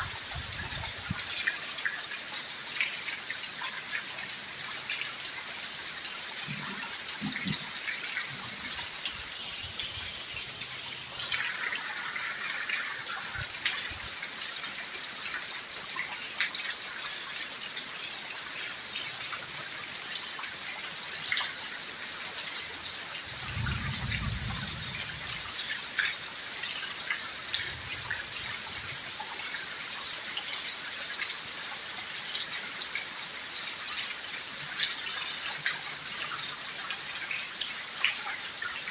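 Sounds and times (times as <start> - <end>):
raindrops ticking and dripping: 0.0 - 38.9
rain hissing: 5.6 - 15.1, 23.2 - 29.8.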